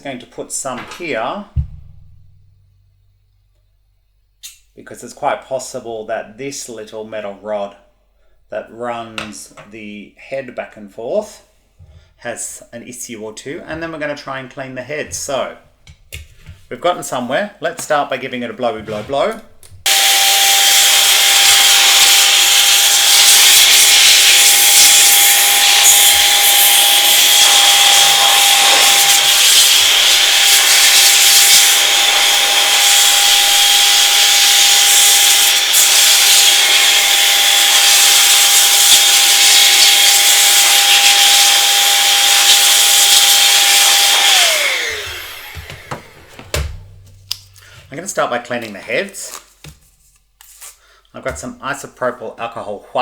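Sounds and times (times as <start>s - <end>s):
air blower rushing and whining: 19.9s - 47.0s
motor spinning down: 40.8s - 46.2s.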